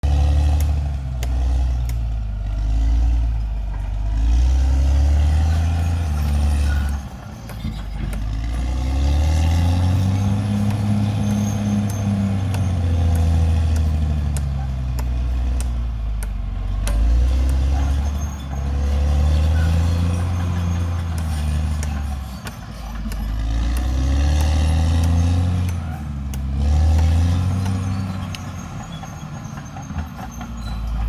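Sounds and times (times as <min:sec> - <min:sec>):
bulldozer diesel engine under load: 0:00.0 - 0:31.0
sharp metal clanks and clicks: 0:20.0 - 0:31.0.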